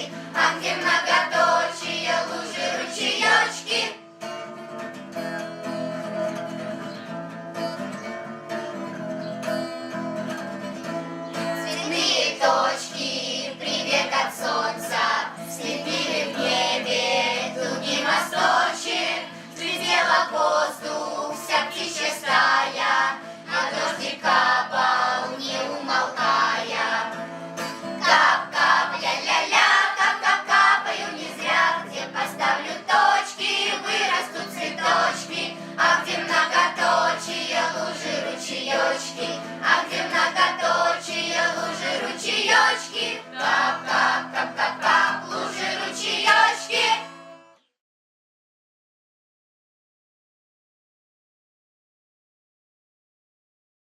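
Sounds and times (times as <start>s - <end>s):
group of voices singing: 0.0s - 4.0s, 11.6s - 27.3s, 27.9s - 47.1s
guitar accompaniment: 0.0s - 47.6s.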